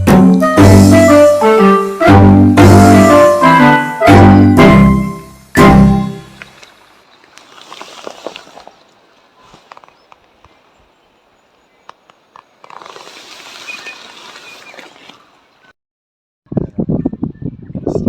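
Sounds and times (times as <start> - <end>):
rustling in bushes: 6.2 - 15.7
faint high bird calls: 6.5 - 15.7.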